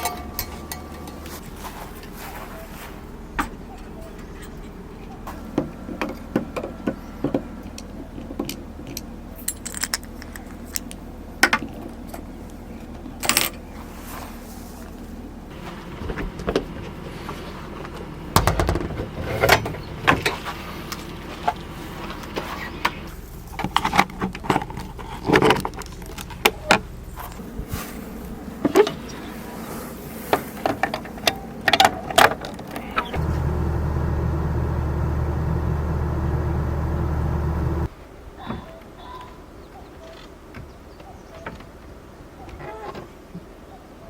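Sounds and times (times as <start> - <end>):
objects clicking and clattering: 0.0 - 12.3, 17.8 - 29.1
low electric hum: 0.0 - 37.9.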